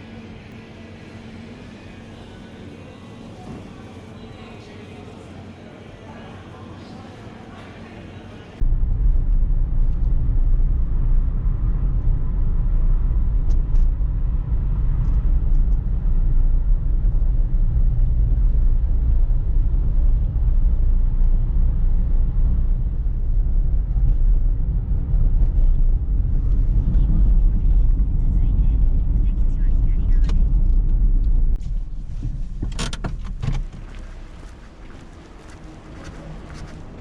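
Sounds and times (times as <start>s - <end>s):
car road rumble: 8.6s - 37.0s.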